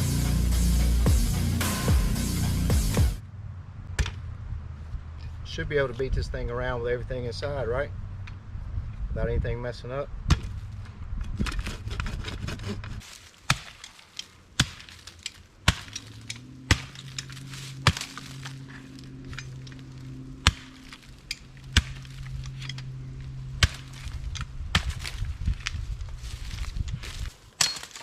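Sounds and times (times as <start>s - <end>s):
shovel blade chopping wood: 11.3s - 28.0s
low hum: 15.4s - 27.4s.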